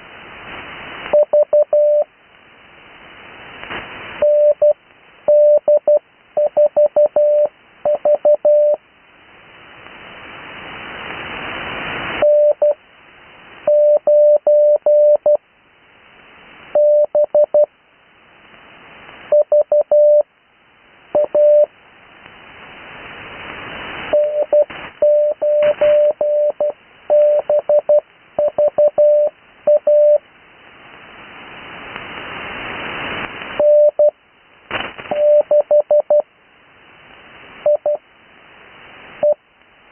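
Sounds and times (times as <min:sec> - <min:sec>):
radio hiss: 0:00.0 - 0:17.7, 0:18.3 - 0:39.9
morse code beeping: 0:04.2 - 0:08.8, 0:12.2 - 0:12.8, 0:13.7 - 0:15.4, 0:21.2 - 0:21.7, 0:24.1 - 0:30.2, 0:33.6 - 0:34.1, 0:35.1 - 0:36.2, 0:37.7 - 0:38.0.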